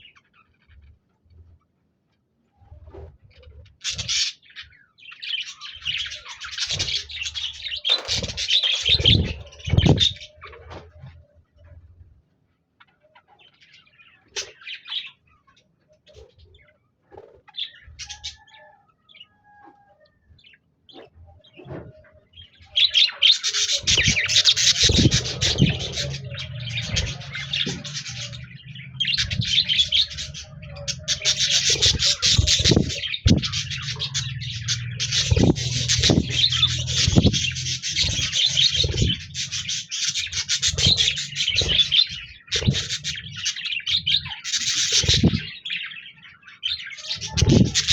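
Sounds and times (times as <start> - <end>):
budgerigars chirping and warbling: 2.6 - 11.7, 12.8 - 19.6, 20.4 - 47.9
low rumble: 23.8 - 39.7.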